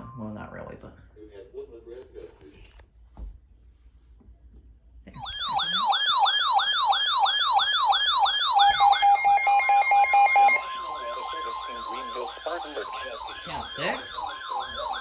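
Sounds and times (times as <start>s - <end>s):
electronic yelp siren: 5.2s - 15.0s
steady alarm tone: 5.2s - 15.0s
rapid beeping: 5.3s - 15.0s.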